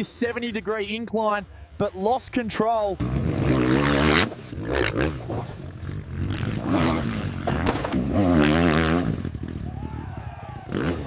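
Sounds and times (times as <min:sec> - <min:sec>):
motorcycle engine revving: 0:03.0 - 0:11.0.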